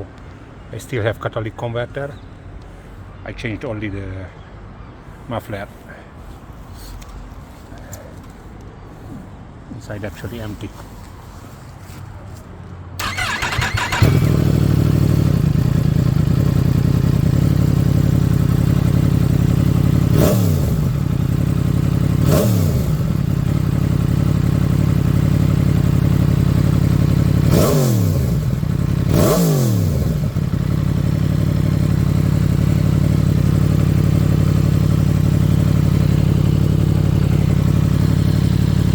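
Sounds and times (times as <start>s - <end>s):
motorcycle engine idling and revving: 13.0s - 38.9s.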